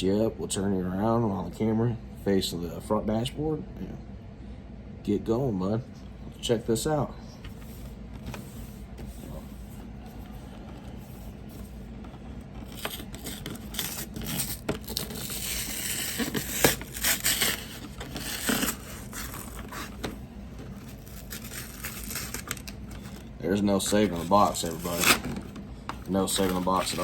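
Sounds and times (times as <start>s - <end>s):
low steady hum: 0.0s - 27.0s
packaging tearing and crinkling: 12.2s - 27.0s.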